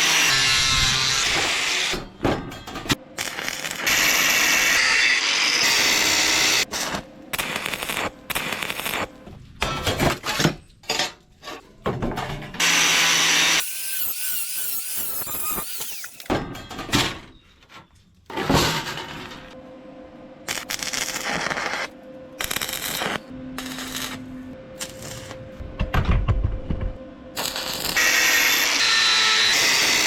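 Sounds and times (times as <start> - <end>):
metalworking power tool: 0.0 - 2.1, 2.8 - 6.8, 12.6 - 16.3, 27.4 - 30.0.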